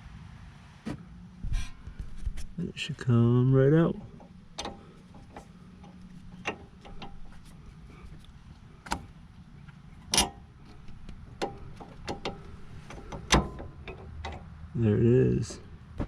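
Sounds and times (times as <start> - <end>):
metal tools clicking and knocking: 3.9 - 7.5, 10.0 - 14.5.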